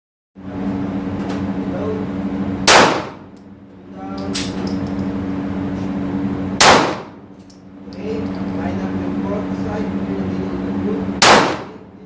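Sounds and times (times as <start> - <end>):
low hum: 0.4 - 12.0
gunshots: 2.7 - 3.2, 6.6 - 7.2, 11.2 - 11.8.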